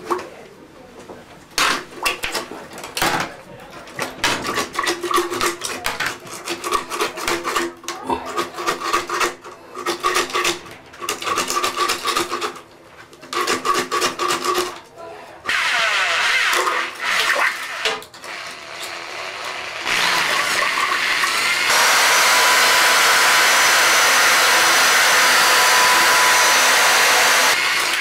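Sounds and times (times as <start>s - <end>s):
drill motor whirring: 15.5s - 28.0s.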